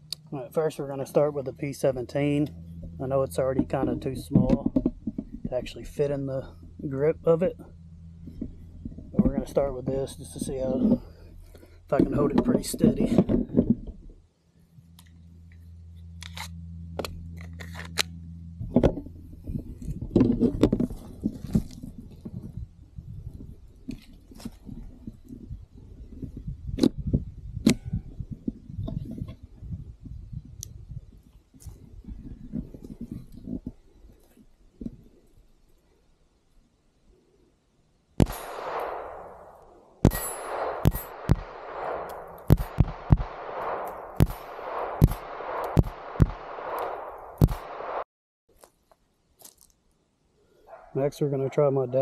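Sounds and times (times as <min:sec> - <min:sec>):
pistol handling rumble: 0:00.0 - 0:14.2, 0:14.8 - 0:29.4, 0:38.2 - 0:47.8
pistol shots with echo: 0:38.2 - 0:48.0.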